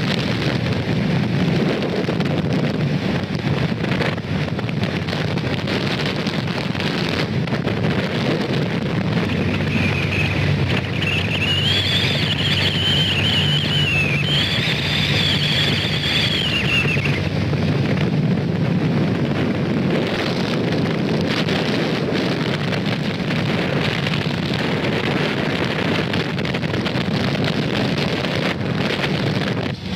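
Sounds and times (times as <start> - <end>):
speedboat engine running: 0.0 - 29.9
wind and water rushing: 0.0 - 29.9
high wavering whine: 8.9 - 17.6.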